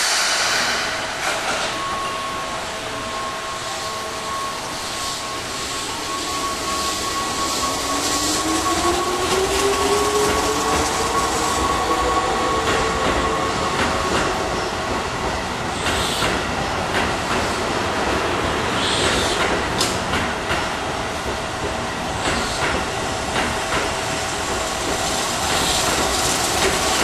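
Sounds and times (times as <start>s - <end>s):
steady high tone: 0.4s - 15.2s
electric train motor whine: 1.1s - 14.4s.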